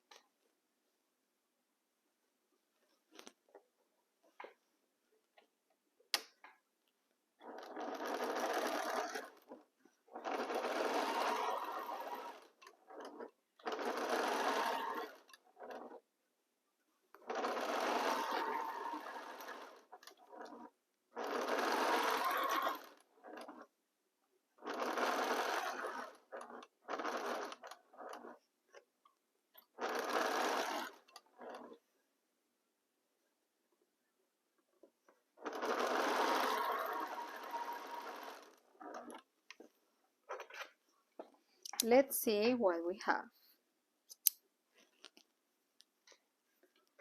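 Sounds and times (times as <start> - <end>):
sewing machine stitching: 7.4 - 16.1, 17.1 - 23.8, 24.6 - 28.9, 29.6 - 31.9, 35.1 - 40.8
sharp click: 44.1 - 44.4.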